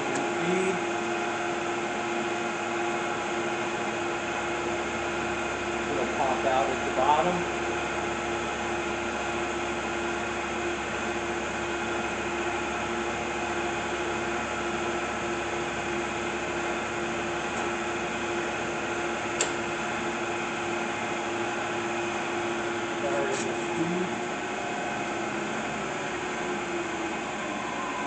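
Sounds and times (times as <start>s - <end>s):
milling machine humming: 0.0s - 28.0s
sharp click: 19.4s - 19.6s.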